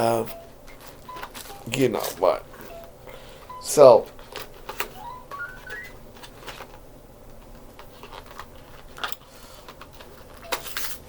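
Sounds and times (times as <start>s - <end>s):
rising electronic beeps: 5.0s - 6.0s.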